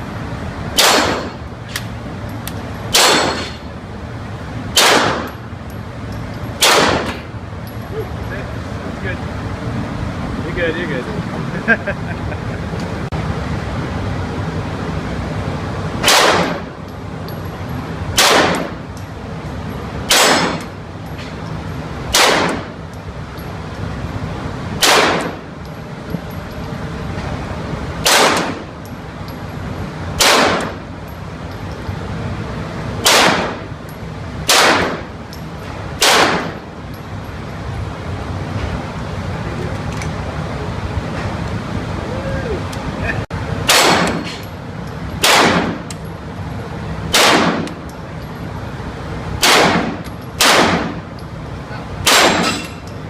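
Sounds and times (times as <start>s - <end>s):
steady background noise: 0.0s - 53.0s
gunshots with echo: 0.8s - 1.4s, 4.8s - 5.3s, 6.6s - 7.2s, 16.0s - 16.7s, 20.1s - 20.6s, 24.8s - 25.4s, 28.0s - 28.6s, 33.0s - 33.6s, 34.5s - 35.0s, 36.0s - 36.6s, 49.4s - 51.0s, 52.0s - 52.5s.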